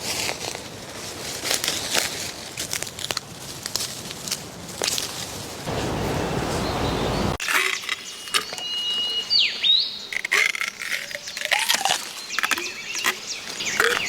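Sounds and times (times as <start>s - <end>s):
twigs crackling and snapping: 0.0s - 5.7s, 7.4s - 14.0s
bird whistling call: 5.8s - 14.0s.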